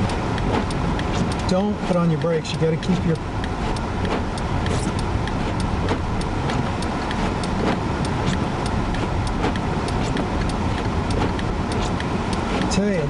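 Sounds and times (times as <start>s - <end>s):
car cabin rumble: 0.0s - 13.0s
light even ticking: 0.0s - 13.0s.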